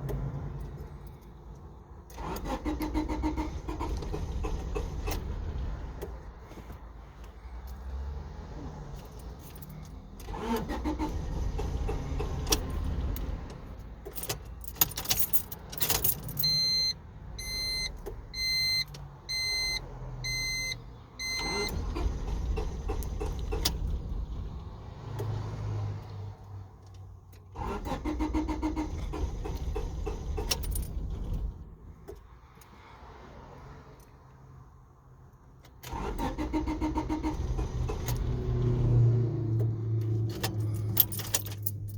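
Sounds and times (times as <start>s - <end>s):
car engine cranking without starting: 0.0s - 32.8s, 35.4s - 41.9s
keys jingling in ignition: 0.5s - 5.2s, 8.8s - 19.6s, 26.8s - 32.3s, 35.4s - 38.4s, 39.4s - 41.9s
warning chime beeping: 16.4s - 21.7s.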